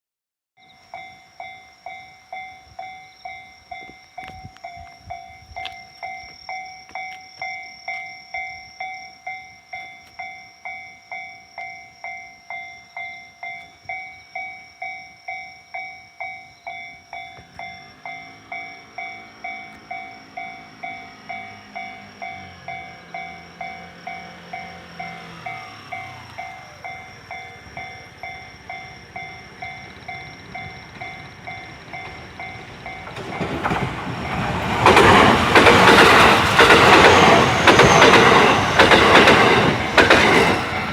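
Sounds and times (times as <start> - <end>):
level-crossing warning bell: 0.6 - 40.9
electric train motor whine: 17.5 - 40.9.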